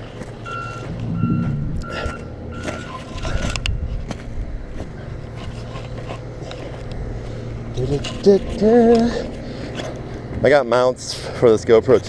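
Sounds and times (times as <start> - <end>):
heavy machine engine running: 0.0 - 11.6
reversing alarm beeping: 0.4 - 3.5
low rumble: 0.7 - 5.4.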